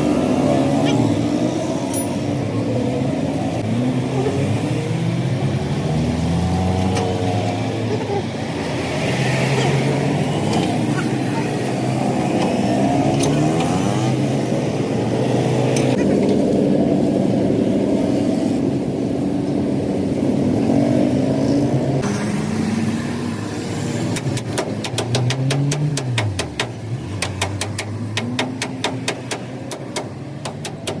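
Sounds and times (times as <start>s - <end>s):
truck engine revving: 0.0s - 16.6s.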